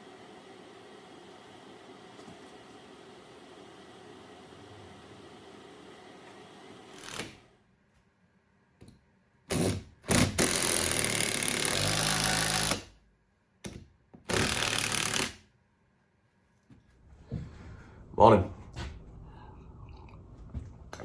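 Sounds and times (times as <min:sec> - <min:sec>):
power saw cutting plywood: 0:03.6 - 0:07.4, 0:09.5 - 0:12.9, 0:14.3 - 0:15.4.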